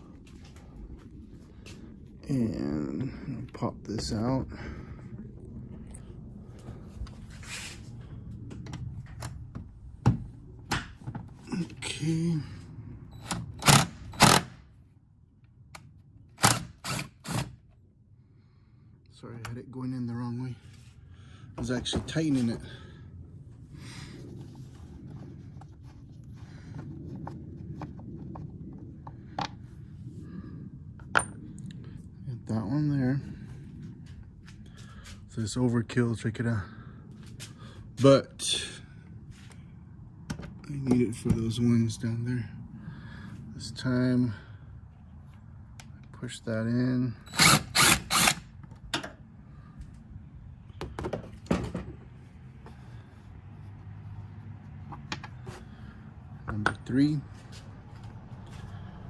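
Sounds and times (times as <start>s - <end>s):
low rumble: 0.0s - 16.4s, 17.9s - 46.1s.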